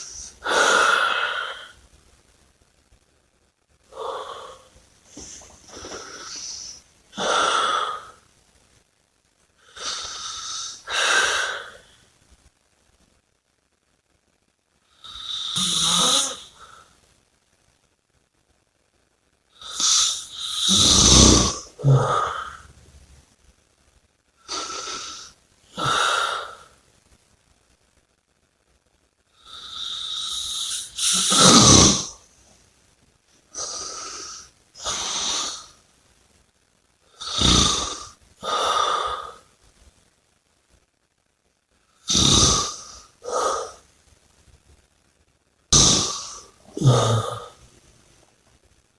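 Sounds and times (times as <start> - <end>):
person snoring and breathing heavily: 0.0 - 1.8, 3.9 - 8.2, 9.7 - 11.9, 15.0 - 16.8, 19.6 - 22.7, 24.5 - 26.7, 29.4 - 32.2, 33.5 - 35.7, 37.2 - 39.5, 42.1 - 43.8, 45.7 - 47.7.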